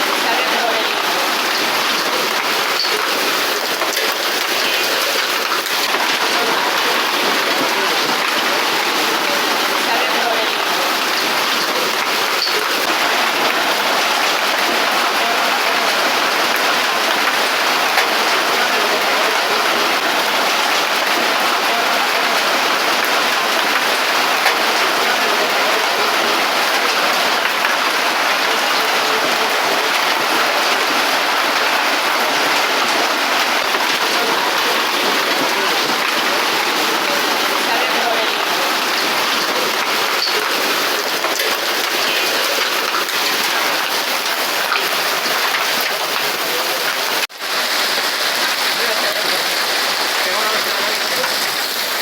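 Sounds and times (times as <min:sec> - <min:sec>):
rushing water hiss: 0:00.0 - 0:52.0.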